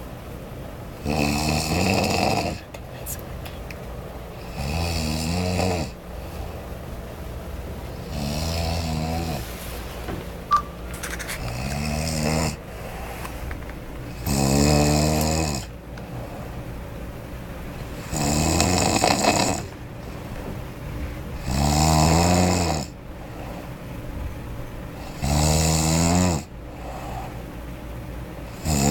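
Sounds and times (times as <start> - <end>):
man snoring loudly: 1.0 - 2.7, 4.4 - 6.0, 8.0 - 9.4, 11.5 - 12.6, 14.2 - 15.7, 18.0 - 19.7, 21.4 - 23.0, 25.0 - 27.0, 28.5 - 28.9.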